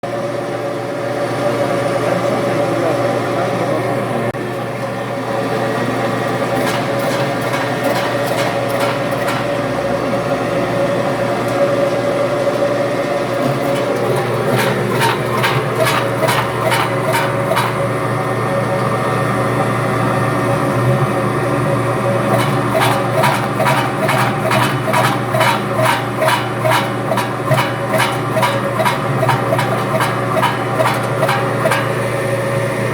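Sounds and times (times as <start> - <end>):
vegetable dicer motor hum: 0.1 - 32.9
cutter clacking: 6.6 - 10.2, 13.4 - 18.0, 22.2 - 32.4.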